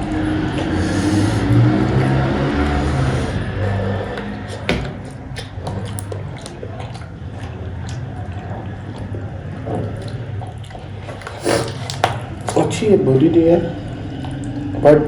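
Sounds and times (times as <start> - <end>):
person chewing food: 0.0 - 12.8
mouth clicks: 3.0 - 12.8.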